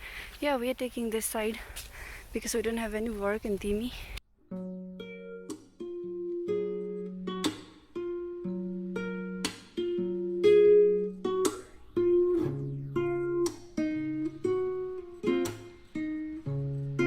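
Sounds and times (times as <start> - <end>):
strummed acoustic guitar: 4.5 - 17.0.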